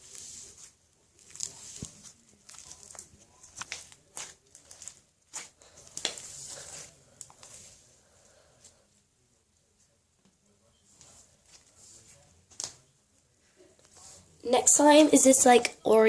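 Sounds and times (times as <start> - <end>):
slime with beads crackling: 0.0 - 7.7
wet squishing slime: 0.0 - 7.8.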